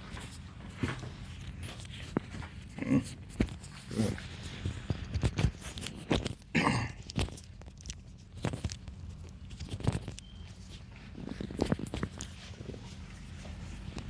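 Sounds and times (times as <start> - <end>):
rustling handling sounds: 0.0 - 14.0
throaty vocal sound: 2.7 - 4.2, 6.5 - 7.0.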